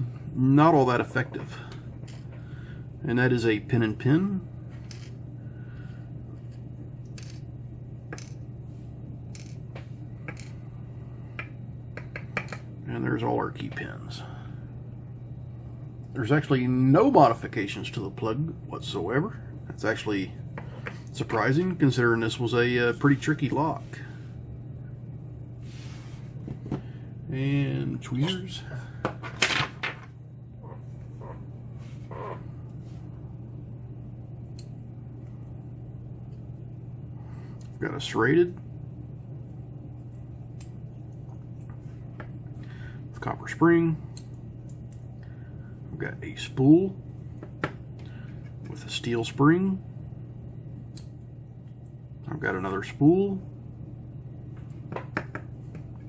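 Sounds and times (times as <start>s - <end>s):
low hum: 0.0s - 56.0s.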